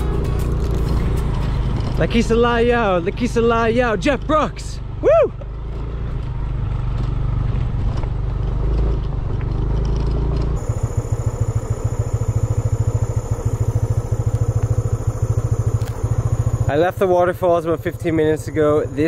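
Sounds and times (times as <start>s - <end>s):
motor scooter engine: 0.0s - 19.0s.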